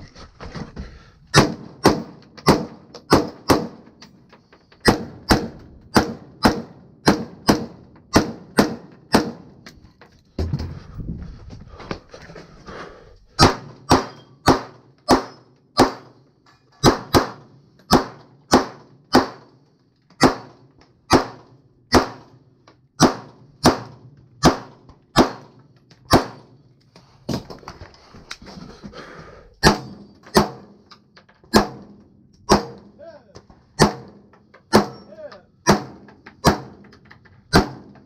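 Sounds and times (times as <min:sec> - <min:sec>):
gunshots: 0:01.3 - 0:04.0, 0:04.8 - 0:09.6, 0:13.4 - 0:16.2, 0:16.8 - 0:19.6, 0:20.2 - 0:22.4, 0:23.0 - 0:26.5, 0:29.6 - 0:30.8, 0:31.5 - 0:33.0, 0:33.8 - 0:36.8, 0:37.5 - 0:38.0.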